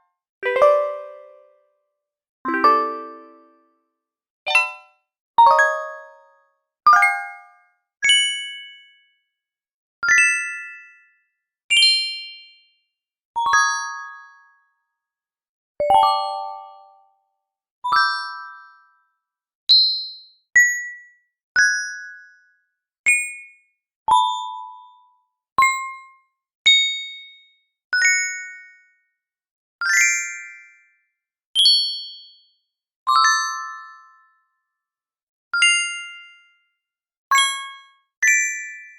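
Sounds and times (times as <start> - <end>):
notification bell chimes: 15.8 - 16.9.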